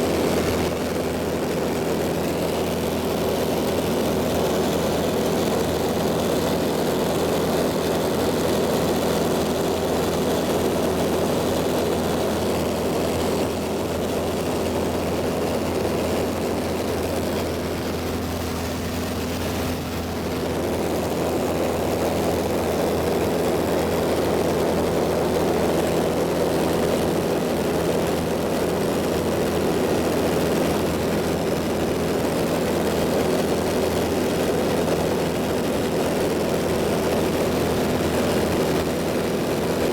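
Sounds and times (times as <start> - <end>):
propeller airplane engine drone: 0.0 - 39.9.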